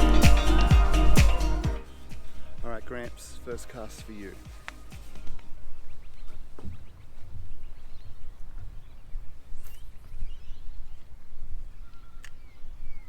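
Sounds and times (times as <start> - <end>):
faint bird chirps: 5.2 - 13.0.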